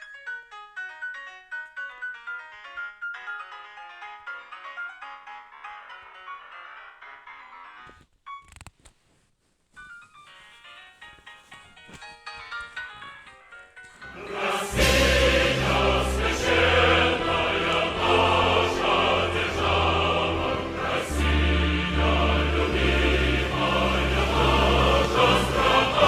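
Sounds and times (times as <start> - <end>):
choir-like sound: 14.0 - 26.0.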